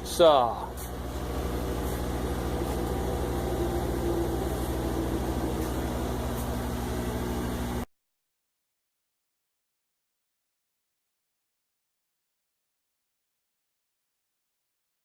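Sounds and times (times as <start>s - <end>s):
electric saw motor humming: 0.7s - 7.8s.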